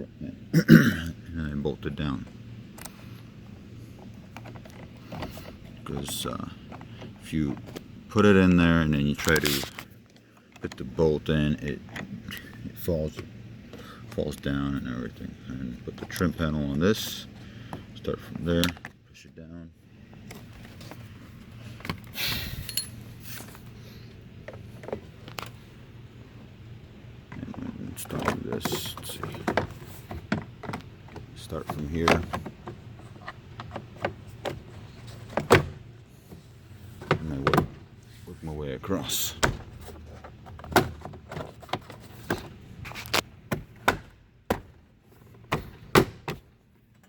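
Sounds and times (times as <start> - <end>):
plastic panel scraping: 3.9 - 8.0.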